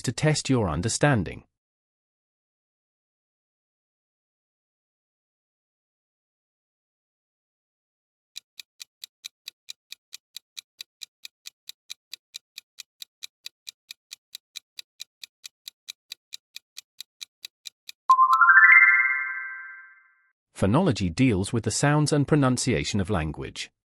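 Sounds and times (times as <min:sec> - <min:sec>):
countdown timer ticking: 0:08.4 - 0:19.8.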